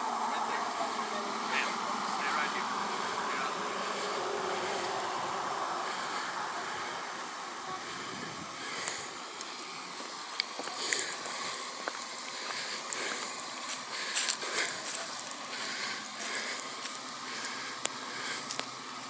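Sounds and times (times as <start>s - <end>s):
roadside traffic rushing: 0.0s - 19.0s
wind on microphone: 8.0s - 8.6s.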